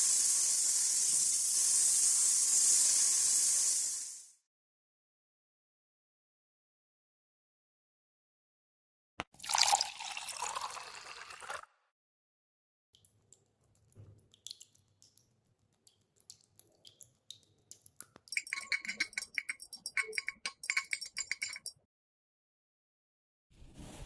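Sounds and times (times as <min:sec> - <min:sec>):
metallic clinking and clicking: 0:17.7 - 0:21.7.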